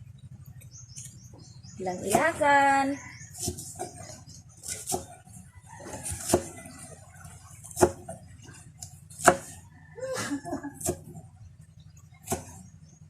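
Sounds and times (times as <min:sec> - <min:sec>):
knife chopping on cutting board: 0:04.7 - 0:05.1, 0:06.0 - 0:06.7, 0:07.7 - 0:08.1, 0:09.2 - 0:09.6.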